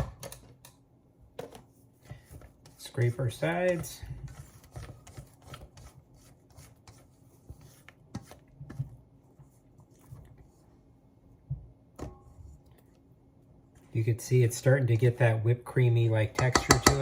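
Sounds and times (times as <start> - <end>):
spatula scraping a mixing bowl: 2.1 - 10.7.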